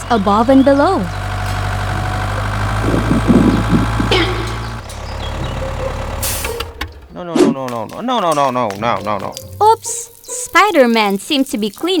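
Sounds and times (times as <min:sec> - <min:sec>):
construction vehicle engine idling: 0:00.0 - 0:09.5.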